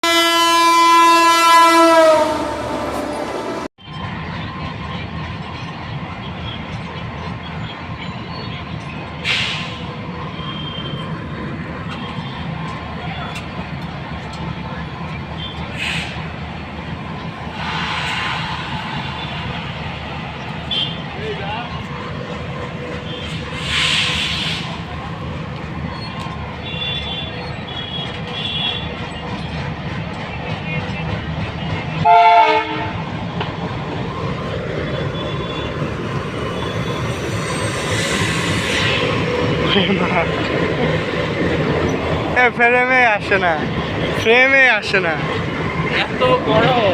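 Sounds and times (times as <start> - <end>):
diesel locomotive rumbling: 0.0 - 46.9.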